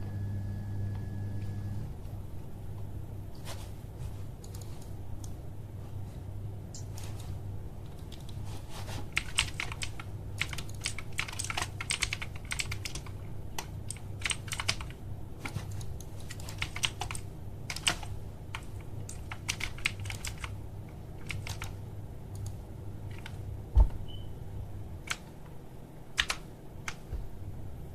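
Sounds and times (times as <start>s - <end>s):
steady low hum: 0.0s - 27.9s
mechanical keyboard clicking: 9.2s - 20.5s, 21.2s - 23.4s, 25.0s - 25.3s, 26.2s - 27.0s.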